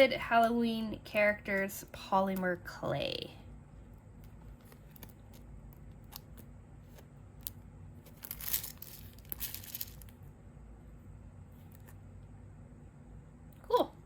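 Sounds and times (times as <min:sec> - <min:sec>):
plastic packaging crinkling: 0:07.4 - 0:10.1.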